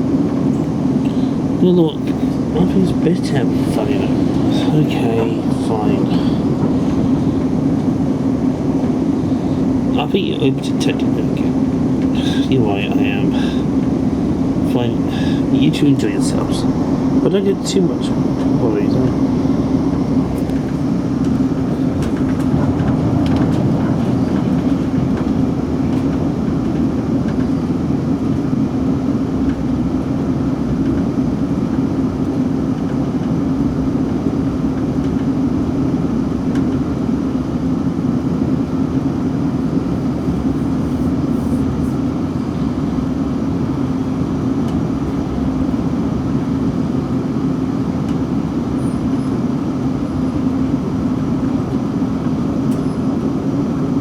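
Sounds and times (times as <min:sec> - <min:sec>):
low train hum: 0:00.0 - 0:54.0
wheels rumbling on rails: 0:00.0 - 0:54.0.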